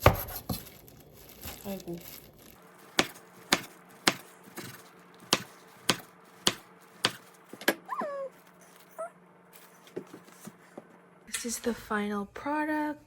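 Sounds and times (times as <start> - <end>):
knife chopping on cutting board: 0.0 - 0.6, 3.0 - 7.2.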